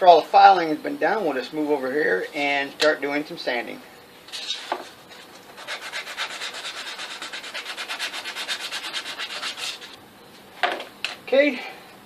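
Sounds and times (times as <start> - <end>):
sandpaper scratching wood: 5.6 - 10.0.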